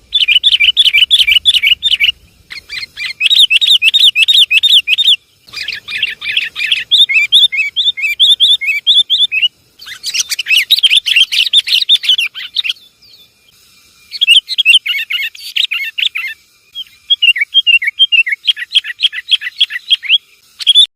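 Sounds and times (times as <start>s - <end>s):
bulbuls chattering: 0.0s - 12.8s.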